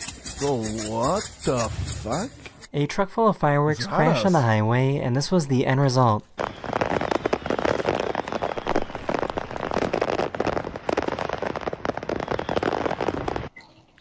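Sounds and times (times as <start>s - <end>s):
fireworks crackling and banging: 0.0s - 2.7s, 6.3s - 13.6s.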